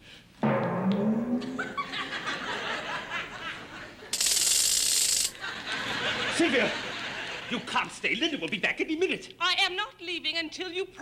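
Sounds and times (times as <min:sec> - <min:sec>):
studio audience laughing: 0:01.5 - 0:04.2, 0:05.4 - 0:07.8.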